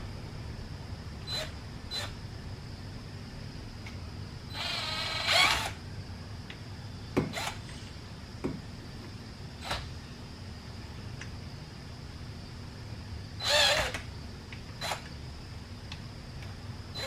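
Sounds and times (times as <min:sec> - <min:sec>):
low steady hum: 0:00.0 - 0:17.0
ratcheting buzz: 0:04.5 - 0:05.8, 0:13.4 - 0:14.0, 0:14.8 - 0:15.1.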